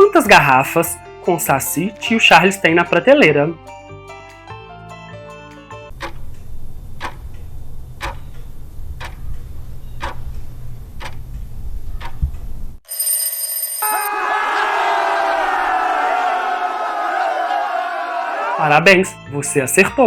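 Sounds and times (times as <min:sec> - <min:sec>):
clock ticking: 0:09.0 - 0:10.2
crowd cheering: 0:13.8 - 0:19.0.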